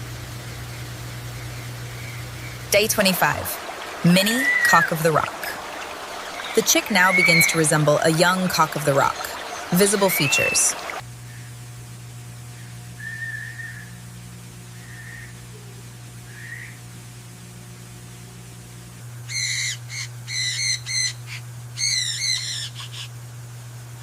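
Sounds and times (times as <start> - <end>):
steady low hum: 0.0 - 24.0
soft whistled bird notes: 12.6 - 14.0, 14.8 - 16.8.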